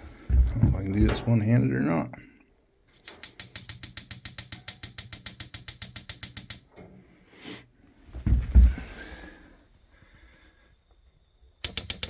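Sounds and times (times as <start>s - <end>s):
spark igniter clicking rapidly: 3.0s - 6.7s, 11.6s - 12.0s.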